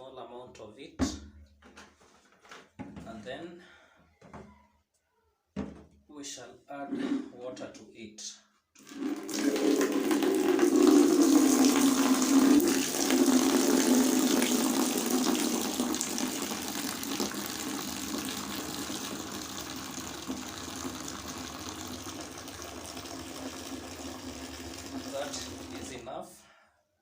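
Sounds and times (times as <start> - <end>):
water running into container: 8.8 - 26.0.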